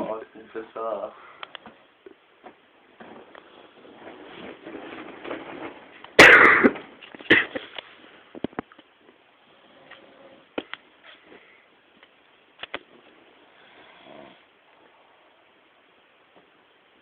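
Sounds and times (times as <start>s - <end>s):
pet snoring softly: 13.5s - 15.4s.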